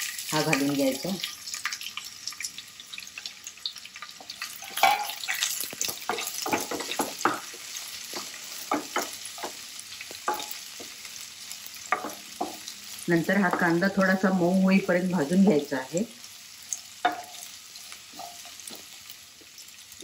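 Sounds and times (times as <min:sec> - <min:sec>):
onion sizzling in hot oil: 0:00.0 - 0:20.0
spatula scraping a pan: 0:04.4 - 0:11.1, 0:17.0 - 0:19.0.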